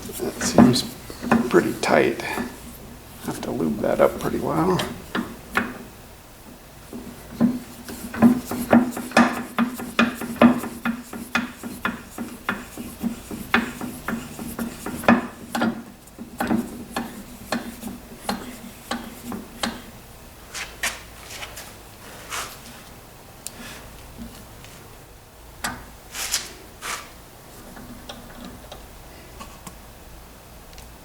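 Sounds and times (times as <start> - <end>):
metal rubbing and scraping: 0.0 - 5.1
metal clicks and knocks: 0.4 - 2.6, 4.8 - 5.9, 6.9 - 19.9.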